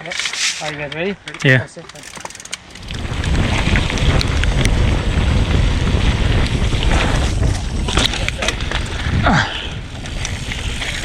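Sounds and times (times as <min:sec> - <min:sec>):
clicks and rattles: 0:00.0 - 0:03.0
bike tyres rolling on dirt: 0:01.9 - 0:11.0
wind buffeting microphone: 0:02.6 - 0:11.0.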